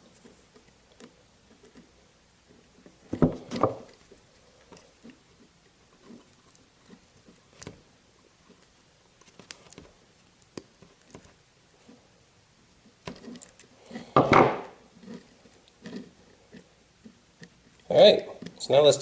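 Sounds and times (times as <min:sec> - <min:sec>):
wiring rustling: 0:00.0 - 0:12.0.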